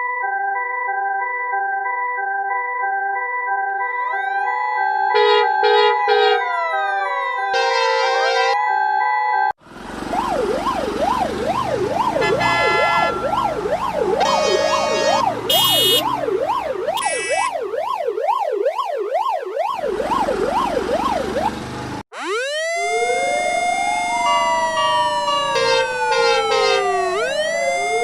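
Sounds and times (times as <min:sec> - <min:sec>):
siren yelping: 0:03.9 - 0:08.6, 0:10.0 - 0:28.0
higher yelping siren: 0:04.0 - 0:08.6, 0:10.0 - 0:28.0
short horn blasts: 0:07.6 - 0:08.6, 0:12.2 - 0:13.3, 0:14.2 - 0:16.1, 0:25.6 - 0:26.9
siren winding up: 0:10.2 - 0:21.6, 0:22.2 - 0:28.0.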